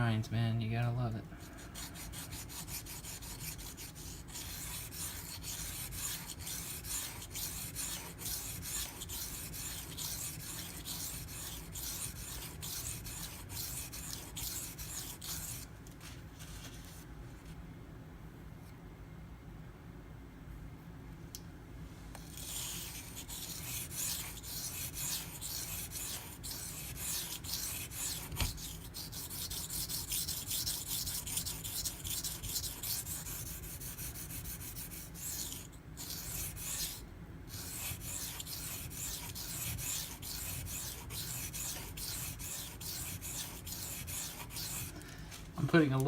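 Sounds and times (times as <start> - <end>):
knife scraping on waterstone: 22.4 - 45.0.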